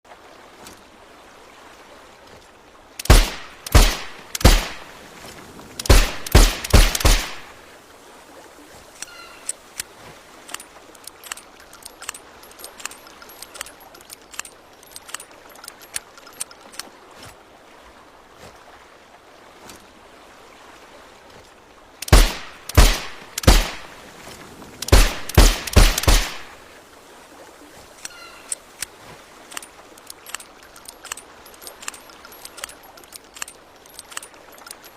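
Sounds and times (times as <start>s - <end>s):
suppressed revolver shots: 3.0s - 4.8s, 5.8s - 7.5s, 22.0s - 23.9s, 24.8s - 26.5s
light clicks and rattles: 9.0s - 16.9s, 28.0s - 34.9s.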